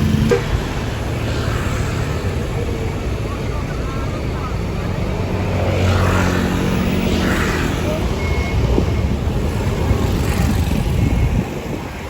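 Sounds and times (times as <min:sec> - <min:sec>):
bus engine rumbling: 0:00.0 - 0:12.0
faint high beep: 0:07.9 - 0:10.4.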